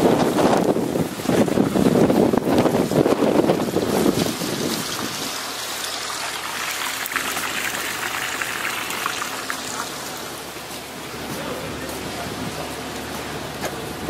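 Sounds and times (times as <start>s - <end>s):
wind buffeting microphone: 0.0s - 9.3s
water hissing: 1.8s - 11.2s.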